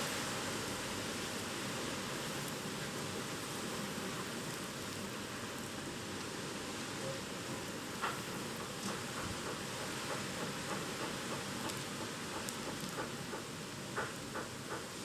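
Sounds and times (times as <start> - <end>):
rain: 0.0 - 15.0
wind: 0.0 - 15.0.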